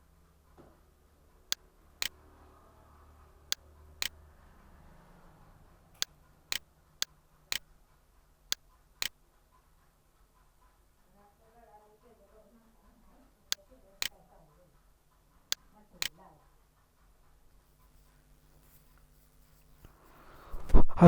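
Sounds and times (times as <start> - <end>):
faint low hum: 0.0 - 21.0
sharp clicks: 6.0 - 7.7, 13.5 - 14.2.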